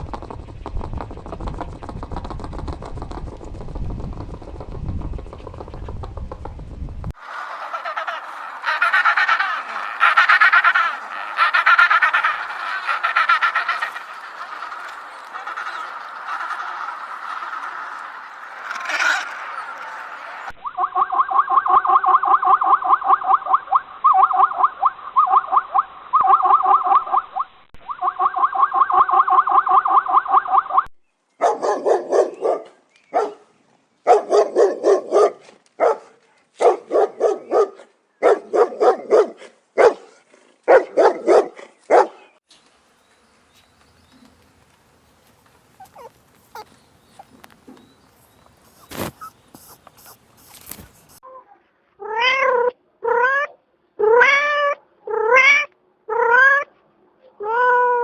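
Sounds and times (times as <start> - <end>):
rapidly pulsing animal calls: 7.2 - 30.8, 45.7 - 51.2
cat meowing: 54.0 - 56.6.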